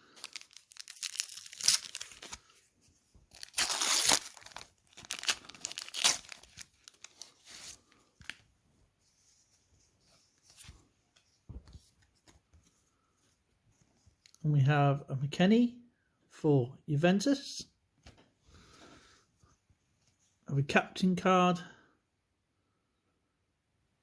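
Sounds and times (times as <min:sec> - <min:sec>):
foil wrapper ripping and crinkling: 0:00.0 - 0:02.5, 0:03.3 - 0:07.7
cards being handled: 0:00.1 - 0:02.6.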